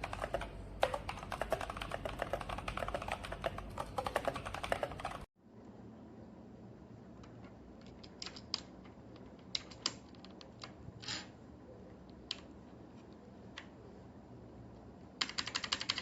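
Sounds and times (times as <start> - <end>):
mechanical keyboard clicks: 0.0 - 5.3, 15.2 - 16.0.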